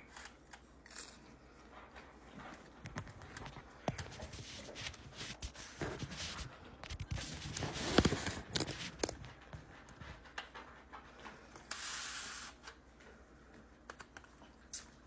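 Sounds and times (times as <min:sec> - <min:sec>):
objects being handled: 0:02.4 - 0:10.0.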